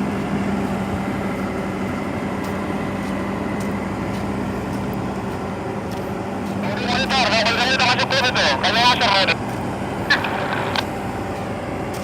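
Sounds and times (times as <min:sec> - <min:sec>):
truck diesel engine droning: 0:00.0 - 0:12.0.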